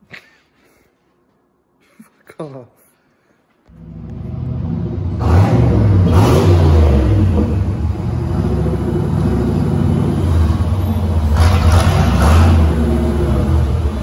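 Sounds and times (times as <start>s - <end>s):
car engine revving: 3.7s - 14.0s.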